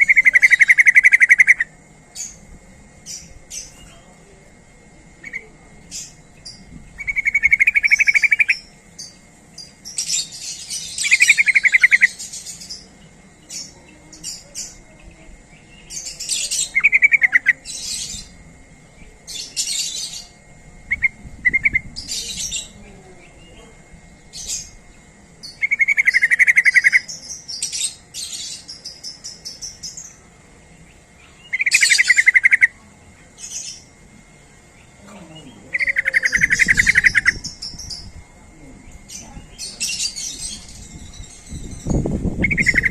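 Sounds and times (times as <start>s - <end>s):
bird singing bubbling phrases: 0.0s - 2.4s, 3.0s - 32.8s, 33.4s - 42.9s
sharp high bird chirps: 0.0s - 2.4s, 5.2s - 14.8s, 25.4s - 30.2s, 31.2s - 32.7s, 35.7s - 38.2s, 39.2s - 42.9s.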